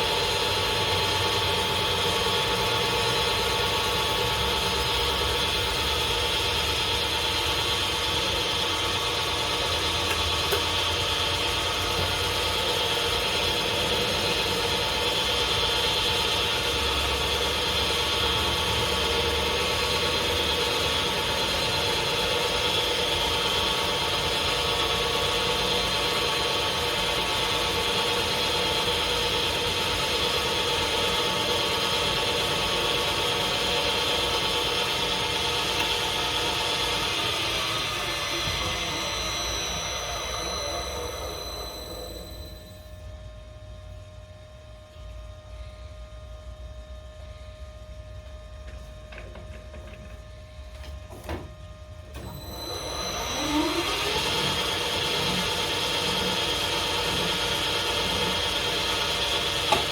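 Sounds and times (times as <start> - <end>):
lathe humming and whining: 0.0 - 59.9.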